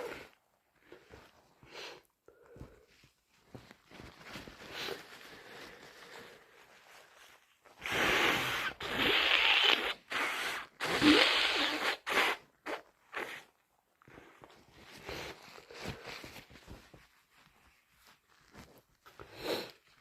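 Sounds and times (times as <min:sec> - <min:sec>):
person blowing congested nose: 0:00.0 - 0:01.0, 0:07.7 - 0:16.0, 0:19.2 - 0:19.8
short nasal snorts: 0:07.8 - 0:13.5.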